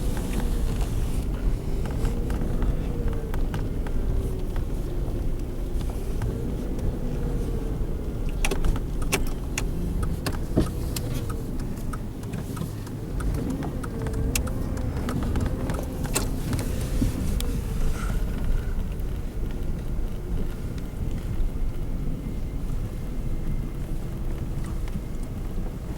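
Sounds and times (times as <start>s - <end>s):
vehicle engine rumbling: 0.0s - 25.9s
sharp clicks and ticks: 8.3s - 16.7s.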